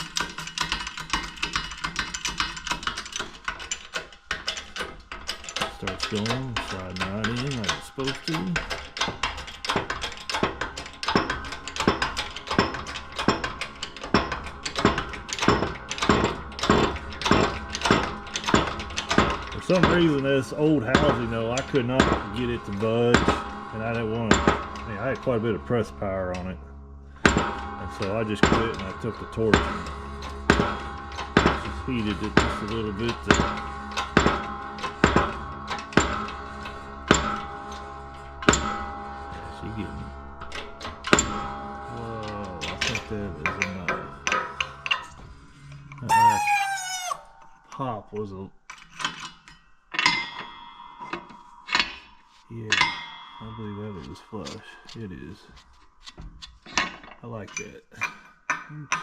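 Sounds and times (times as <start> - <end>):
hydraulic jack clanking: 0.0 - 23.5
metallic clanks with ringing: 49.0 - 55.0.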